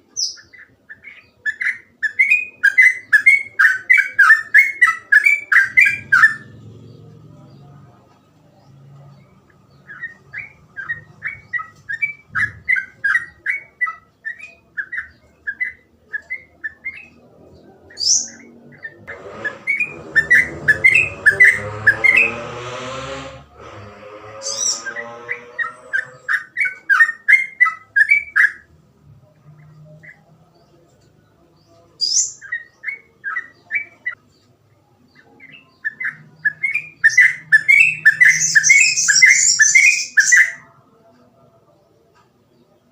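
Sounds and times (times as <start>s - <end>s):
background drone rising in pitch: 17.2s - 26.6s
very high chirps: 18.0s - 22.5s, 23.9s - 28.6s.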